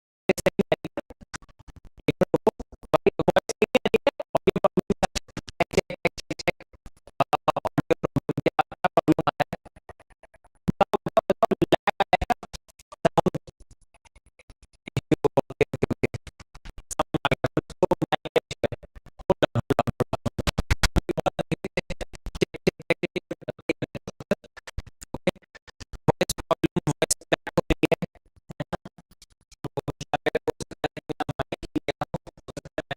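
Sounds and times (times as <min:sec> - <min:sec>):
man's voice glitching: 0:00.3 - 0:01.0, 0:02.2 - 0:05.0, 0:05.6 - 0:06.6, 0:07.2 - 0:09.5, 0:10.8 - 0:12.4, 0:17.0 - 0:19.9, 0:29.8 - 0:32.9.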